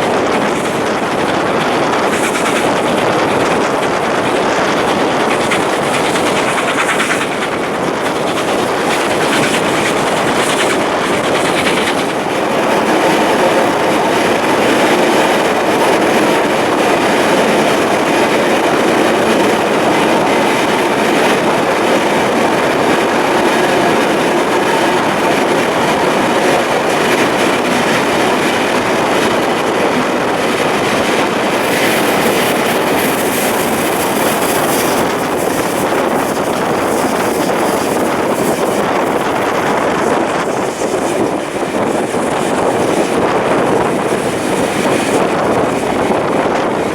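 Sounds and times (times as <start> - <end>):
train wheels rumbling on rails: 0.0 - 46.9.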